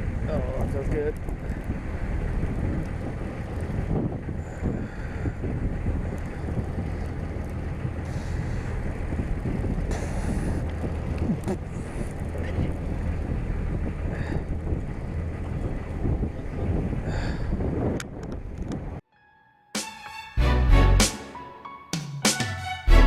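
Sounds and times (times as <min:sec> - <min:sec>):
wind buffeting microphone: 0:00.0 - 0:19.0
boat engine rumble: 0:01.2 - 0:17.1.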